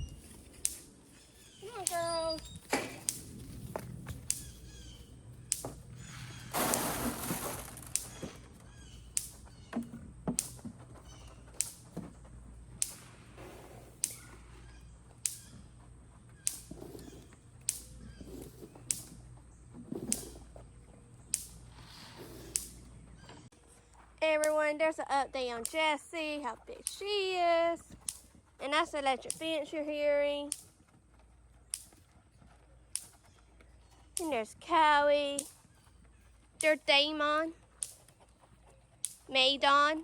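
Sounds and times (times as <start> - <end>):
electric fence snapping: 1.8 - 3.5, 5.5 - 9.5, 10.4 - 10.6, 12.8 - 14.4, 15.2 - 15.6, 16.4 - 18.1, 21.2 - 22.9
rustling burst: 6.2 - 8.4.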